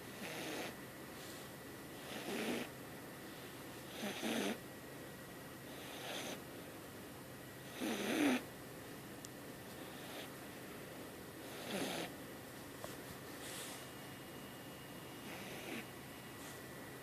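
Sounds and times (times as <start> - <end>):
cat snoring: 0.1 - 0.8, 2.0 - 2.7, 3.9 - 4.6, 5.7 - 6.4, 7.6 - 8.5, 9.8 - 10.3, 11.4 - 12.1, 15.2 - 15.9.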